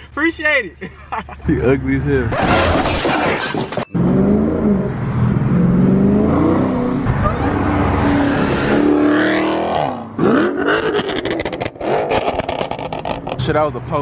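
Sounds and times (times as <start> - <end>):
car engine accelerating: 3.9 - 13.7.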